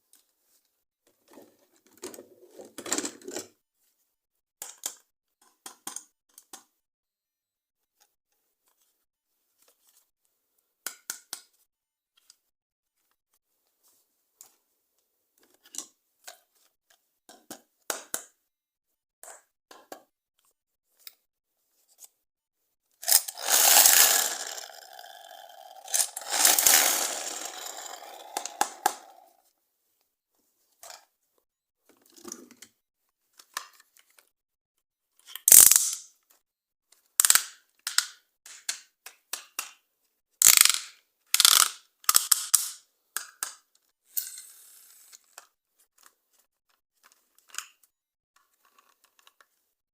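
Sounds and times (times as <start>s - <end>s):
plastic toy parts clicking: 23.0s - 29.4s, 35.2s - 36.2s, 37.2s - 39.8s, 40.4s - 43.8s
sharp plastic snaps: 35.2s - 36.1s, 37.2s - 39.8s, 40.4s - 43.7s.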